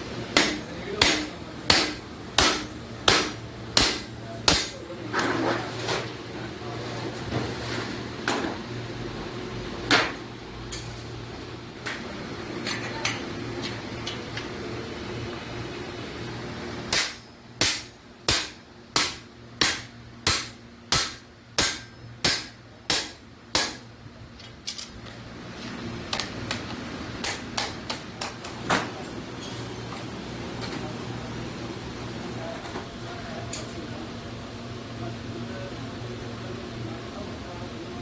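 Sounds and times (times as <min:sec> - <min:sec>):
hammer striking sheet metal: 0:00.4 - 0:04.9, 0:16.9 - 0:23.9.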